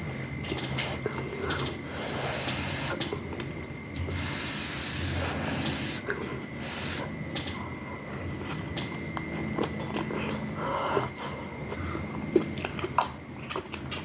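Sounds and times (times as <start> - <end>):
hissy slurping: 4.0 - 7.2
wet chewing: 5.5 - 14.0.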